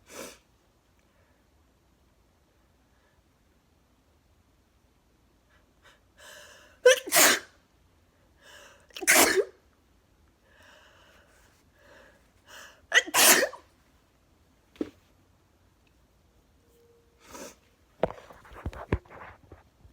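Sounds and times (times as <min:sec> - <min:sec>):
woman sneezing: 0:06.8 - 0:07.5, 0:09.0 - 0:09.5, 0:12.9 - 0:13.6.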